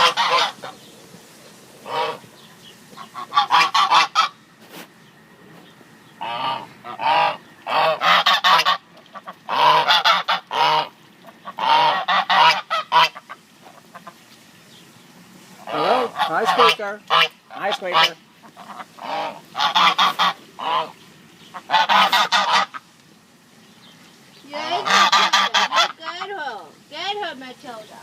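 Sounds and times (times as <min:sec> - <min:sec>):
geese honking: 0:00.0 - 0:01.1, 0:01.8 - 0:04.4, 0:06.0 - 0:14.3, 0:15.4 - 0:22.9, 0:24.5 - 0:27.1.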